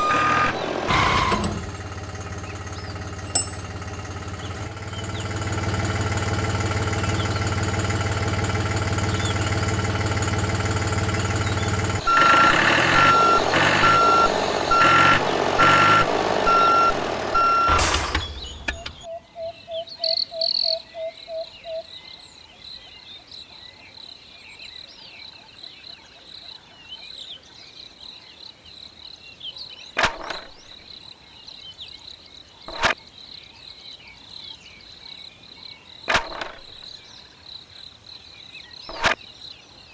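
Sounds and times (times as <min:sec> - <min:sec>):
reversing beeper: 0:00.0 - 0:01.8, 0:12.0 - 0:18.0
vehicle engine running: 0:00.0 - 0:19.1.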